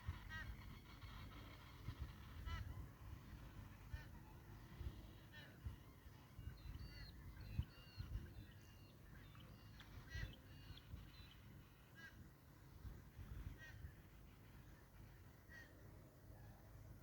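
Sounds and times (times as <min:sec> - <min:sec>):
faint bird chirps: 0:05.1 - 0:12.2.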